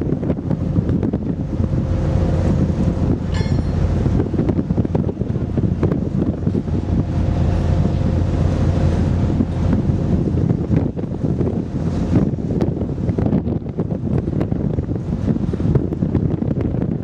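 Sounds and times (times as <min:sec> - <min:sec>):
low steady hum: 0:00.0 - 0:13.7
wind buffeting microphone: 0:00.0 - 0:17.0.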